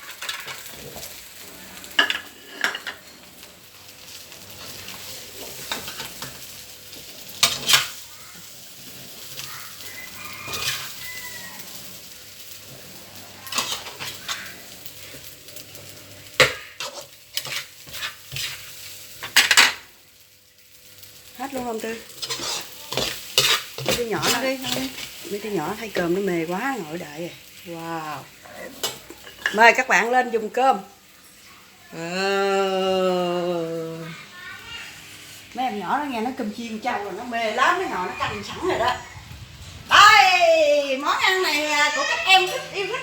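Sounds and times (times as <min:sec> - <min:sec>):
dishes clinking and scraping: 0:00.0 - 0:01.1, 0:01.8 - 0:03.1, 0:13.5 - 0:14.4, 0:28.5 - 0:29.6.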